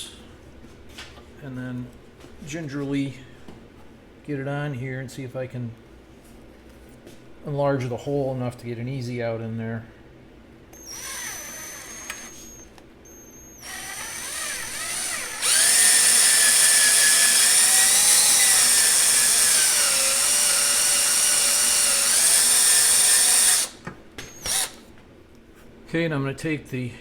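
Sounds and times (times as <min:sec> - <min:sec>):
electric drill whining: 0:10.8 - 0:24.8.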